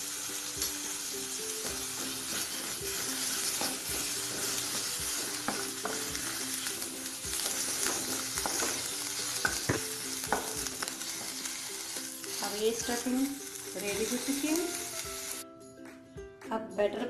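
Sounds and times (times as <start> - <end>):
food sizzling in a pan: 0.0 - 15.4
spoon scraping a pan: 7.3 - 10.5.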